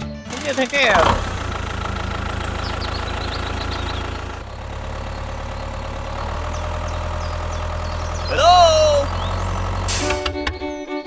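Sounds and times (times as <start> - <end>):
engine idling: 0.0 - 11.0.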